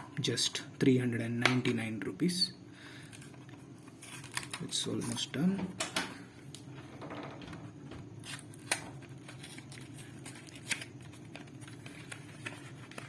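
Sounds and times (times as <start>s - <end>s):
box packaging rustling: 8.1s - 13.0s.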